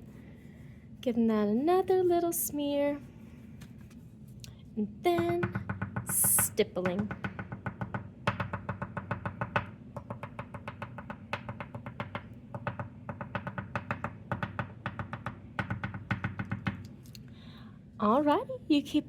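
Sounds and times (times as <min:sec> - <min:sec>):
pastel tapping on paper: 0:05.2 - 0:16.9.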